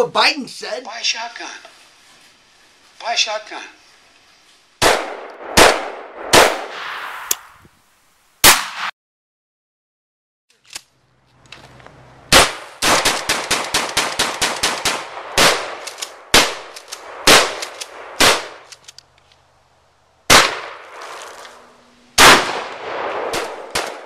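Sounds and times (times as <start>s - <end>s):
gunshots: 4.8s - 7.3s, 8.4s - 8.9s, 12.3s - 18.7s, 20.3s - 21.5s, 22.2s - 24.0s
automatic gunfire burst: 12.3s - 16.6s, 17.2s - 18.6s, 22.2s - 24.0s.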